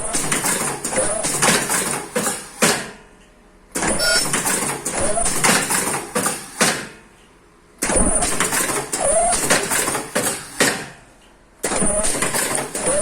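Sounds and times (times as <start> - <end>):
sharp mechanical knocks: 0.0 - 3.0, 3.7 - 7.0, 7.8 - 11.0, 11.6 - 13.0
clattering machine with squeals: 3.8 - 5.4, 11.8 - 13.0.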